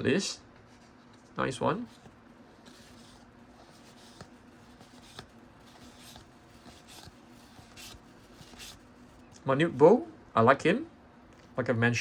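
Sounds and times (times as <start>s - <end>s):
low steady hum: 0.0s - 12.0s
cards swishing: 1.8s - 8.9s.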